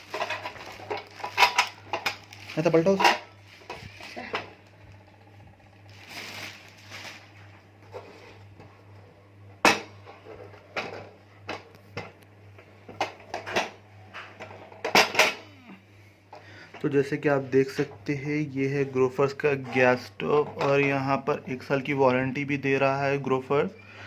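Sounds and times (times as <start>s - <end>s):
rustling: 0.0s - 4.7s, 5.8s - 8.4s
steady low hum: 0.0s - 24.0s.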